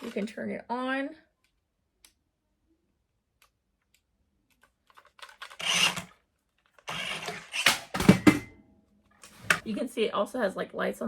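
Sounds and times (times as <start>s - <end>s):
toy electric motor whirring: 5.2s - 6.2s, 6.8s - 7.8s.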